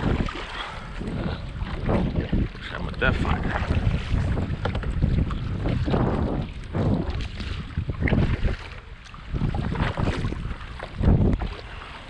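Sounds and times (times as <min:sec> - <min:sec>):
water sloshing around kayak: 0:00.0 - 0:12.0
wind buffeting microphone: 0:00.0 - 0:12.0.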